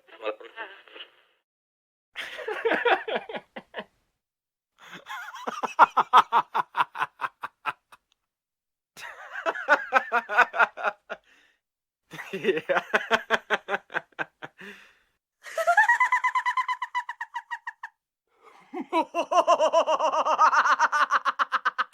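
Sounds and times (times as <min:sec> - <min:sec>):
human laughter: 0:02.2 - 0:03.9, 0:04.8 - 0:08.0, 0:09.0 - 0:11.2, 0:12.1 - 0:14.8, 0:15.4 - 0:21.9.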